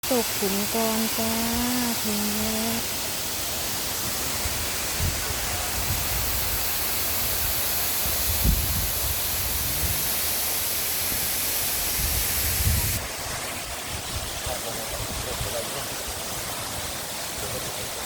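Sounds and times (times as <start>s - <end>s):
waterfall roaring: 0.0s - 18.0s
wind buffeting microphone: 4.4s - 10.2s, 11.8s - 13.0s, 13.6s - 15.6s.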